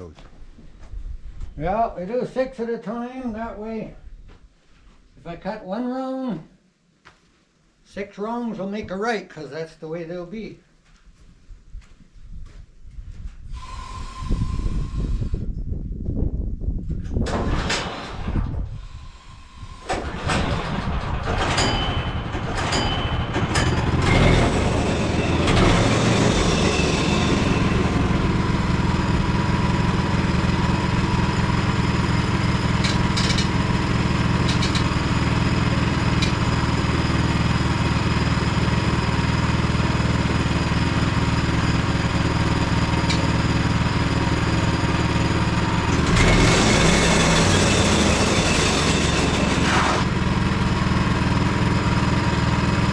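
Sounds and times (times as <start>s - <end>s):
small gasoline engine running: 19.0s - 52.9s.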